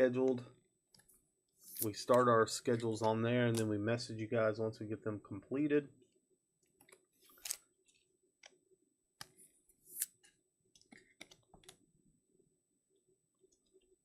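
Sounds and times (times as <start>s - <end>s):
cards sliding into plastic sleeves: 6.8s - 7.6s.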